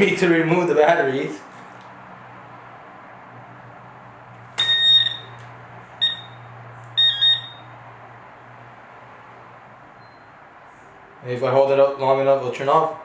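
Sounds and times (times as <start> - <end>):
high-pitched electronic beeping: 4.6 - 5.3, 6.0 - 6.4, 7.0 - 7.7.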